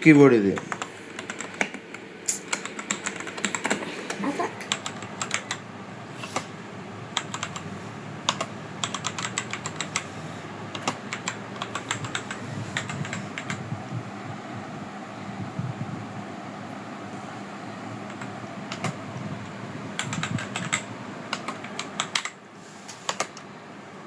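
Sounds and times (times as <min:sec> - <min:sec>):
mechanical keyboard typing: 0:00.5 - 0:05.6, 0:07.1 - 0:10.1, 0:10.7 - 0:13.6, 0:18.0 - 0:19.0, 0:20.0 - 0:22.4, 0:23.1 - 0:23.4.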